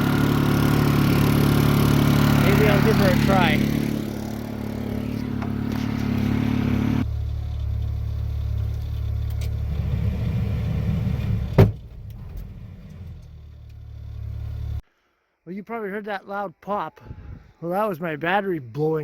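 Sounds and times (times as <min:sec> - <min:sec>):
engine hum: 0:00.0 - 0:14.8.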